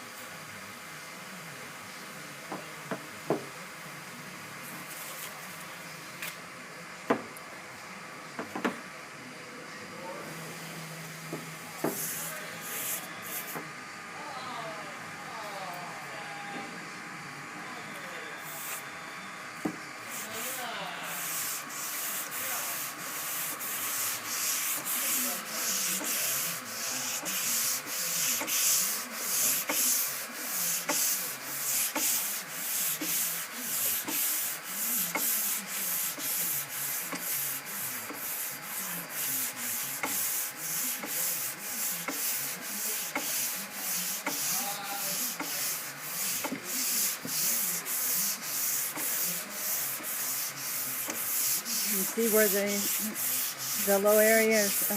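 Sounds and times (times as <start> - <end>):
sandpaper rasping on panel: 21.2 - 54.9.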